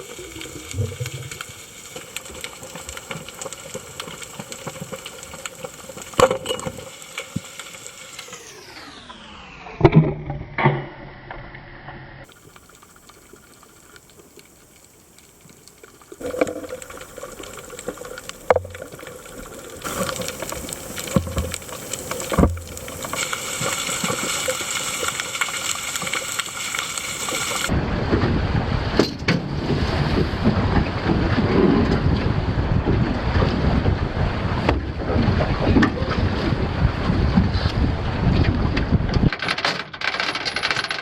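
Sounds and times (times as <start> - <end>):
water sounds: 0.0 - 9.9, 12.2 - 28.0
wind noise: 27.2 - 39.3.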